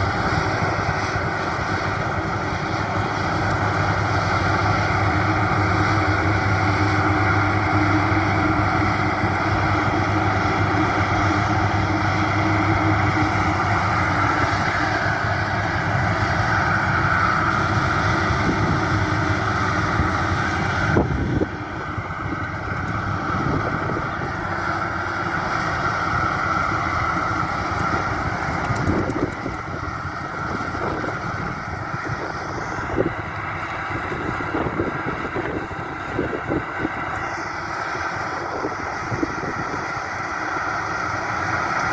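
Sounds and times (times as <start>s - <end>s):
combine harvester running: 0.0s - 41.9s.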